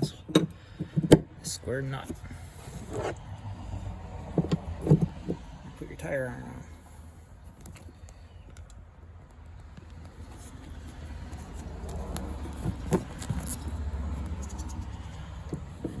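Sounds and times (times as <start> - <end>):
tire iron clinking and scraping: 11.4 - 16.0.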